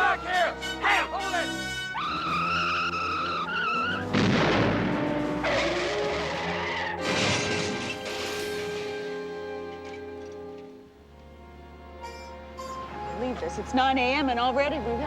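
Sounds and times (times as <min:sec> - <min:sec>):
background music: 0:00.0 - 0:15.0
car skidding: 0:00.7 - 0:10.7
screeching and crashing: 0:02.0 - 0:10.8.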